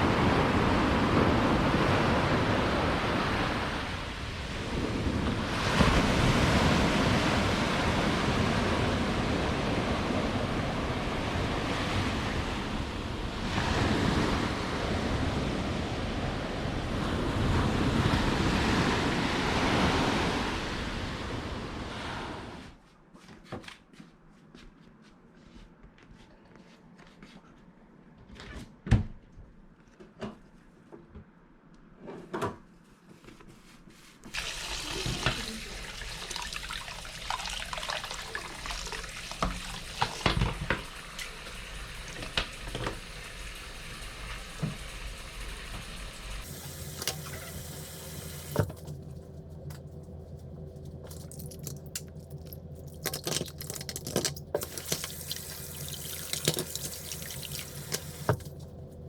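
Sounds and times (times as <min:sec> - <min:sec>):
clatter of things being rinsed: 0:34.3 - 0:45.0, 0:46.4 - 0:49.9, 0:50.8 - 0:58.7
tap water running into sink: 0:34.3 - 0:49.8, 0:50.9 - 0:58.7.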